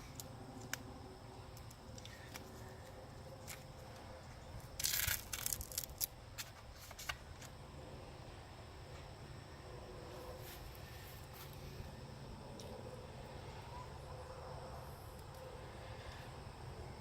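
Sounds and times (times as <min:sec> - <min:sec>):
crinkling rustle: 0:01.6 - 0:07.5.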